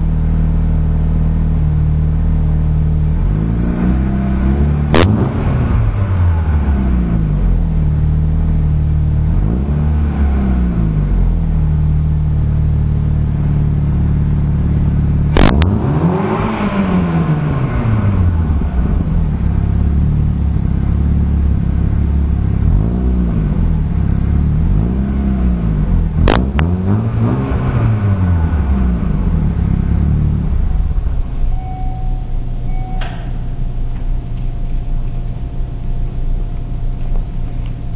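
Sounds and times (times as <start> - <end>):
car engine idling and revving: 0.0 - 37.9
sharp exhaust cracks: 12.4 - 37.9.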